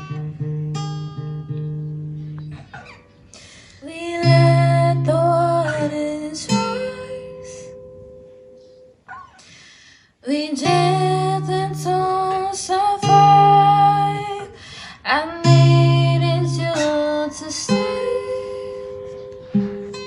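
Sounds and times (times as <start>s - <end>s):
acoustic guitar: 0.0s - 20.0s
person singing long notes: 10.2s - 19.4s.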